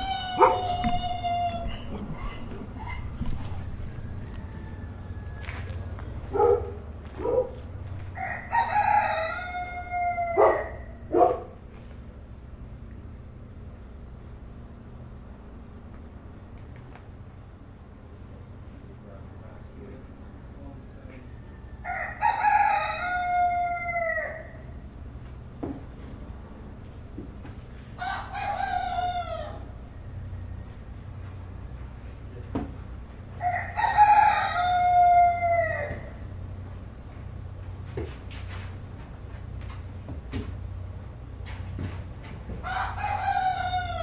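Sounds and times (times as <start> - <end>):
long drawn-out animal call: 0.0 - 3.2
rooster crowing: 0.0 - 6.7, 8.1 - 11.1, 21.1 - 24.8, 28.0 - 30.8, 33.3 - 36.4, 42.6 - 44.0
low steady hum: 0.0 - 44.0.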